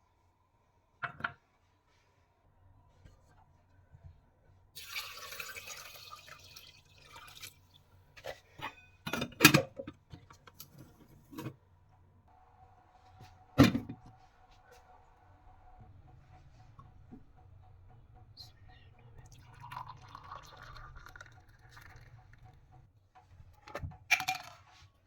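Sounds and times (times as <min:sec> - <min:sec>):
liquid pouring: 0:04.8 - 0:07.8, 0:19.2 - 0:22.6.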